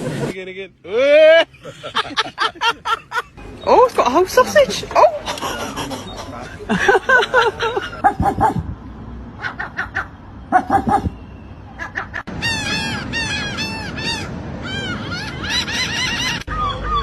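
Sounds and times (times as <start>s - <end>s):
seagull calling: 9.4s - 17.0s.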